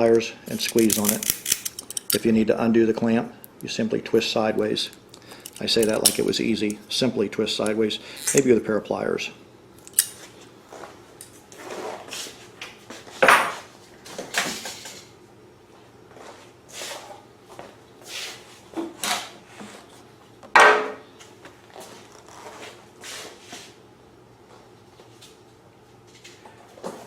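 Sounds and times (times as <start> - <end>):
metal tools clicking and clunking: 0.5 - 2.3, 4.8 - 6.8, 7.6 - 8.5.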